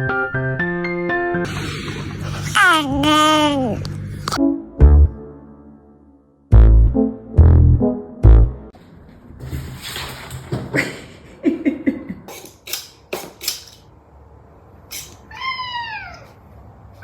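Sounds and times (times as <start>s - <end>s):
cat meowing: 15.2s - 16.4s.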